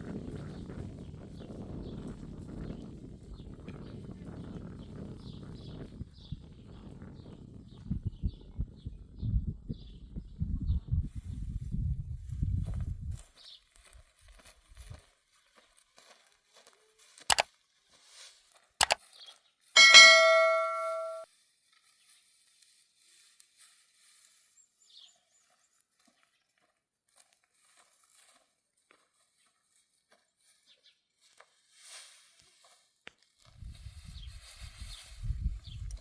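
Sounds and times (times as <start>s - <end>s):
loud metallic ring: 19.8s - 21.2s.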